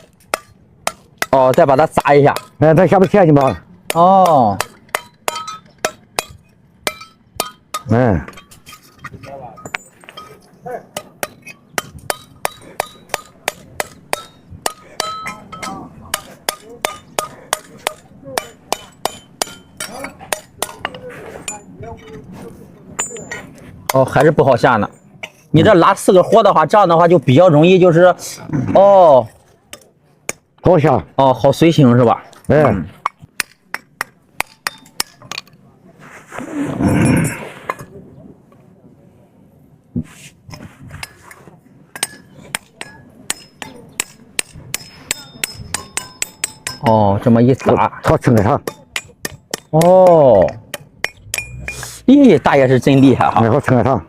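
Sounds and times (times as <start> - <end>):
hammer blows with metallic ring: 0.0 - 22.2, 22.9 - 25.4, 32.5 - 35.6, 41.9 - 47.4, 48.1 - 53.5.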